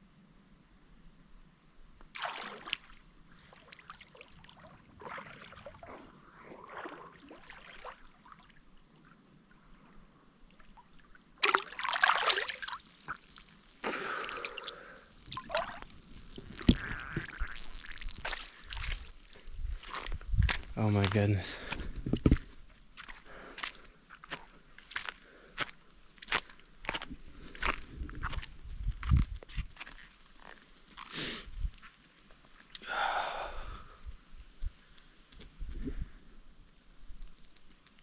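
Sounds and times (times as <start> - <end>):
water splashing and trickling: 2.1 - 20.2.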